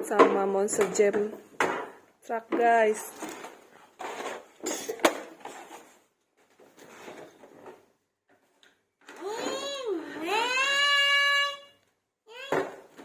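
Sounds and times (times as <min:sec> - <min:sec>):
plastic toys clattering: 0:02.6 - 0:07.9.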